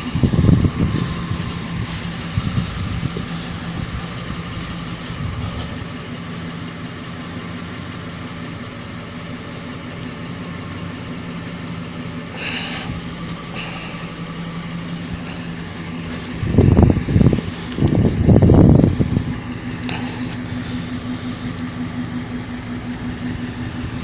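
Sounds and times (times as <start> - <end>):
car engine idling: 0.0 - 24.0
engine knock: 0.0 - 24.0.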